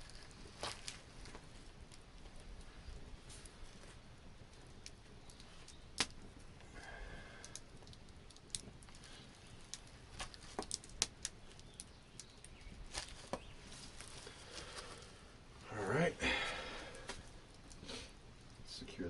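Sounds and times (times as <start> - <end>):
sharp clicks and light ticks: 7.4 - 12.7.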